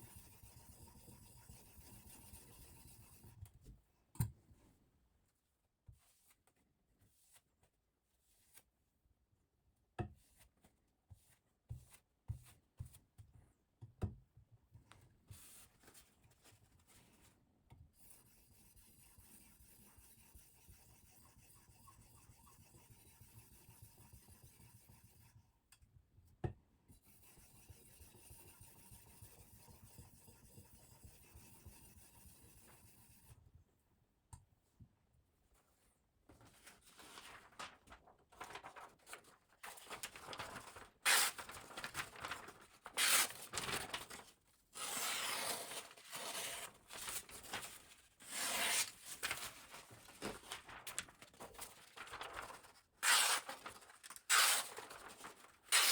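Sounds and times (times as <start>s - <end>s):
crackly rustle: 40.0s - 42.6s, 50.0s - 52.6s.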